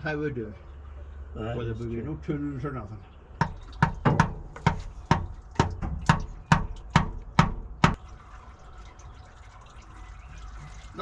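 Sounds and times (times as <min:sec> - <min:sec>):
sharp knocks: 0:03.4 - 0:08.0.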